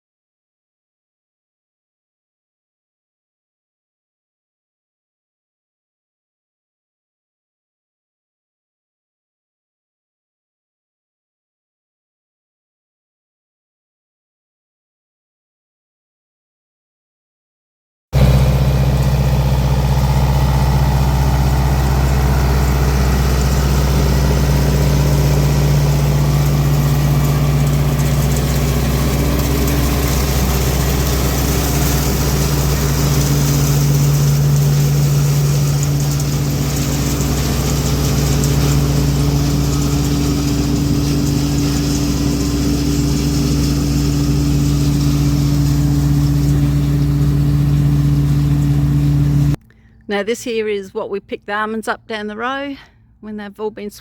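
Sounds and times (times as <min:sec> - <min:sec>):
farm machine engine droning: 0:18.2 - 0:50.8.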